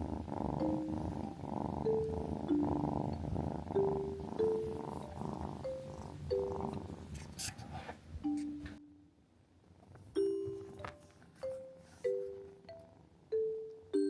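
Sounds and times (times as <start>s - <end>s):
kitten purring: 0.0s - 8.8s, 9.6s - 14.0s
bell-like mallet music: 10.2s - 14.0s.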